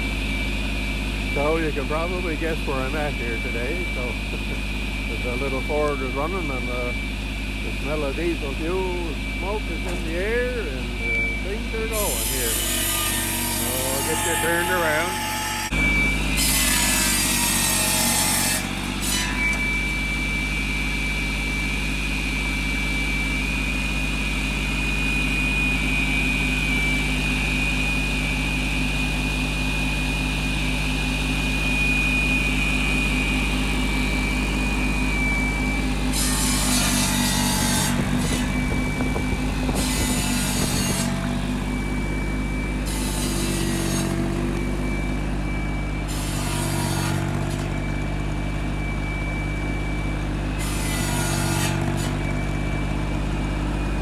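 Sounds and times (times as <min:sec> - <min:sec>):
diesel tractor engine running: 0:00.0 - 0:12.5, 0:13.2 - 0:18.0, 0:18.6 - 0:50.5, 0:51.4 - 0:54.0
thin high whine: 0:01.1 - 0:12.5, 0:24.7 - 0:46.1.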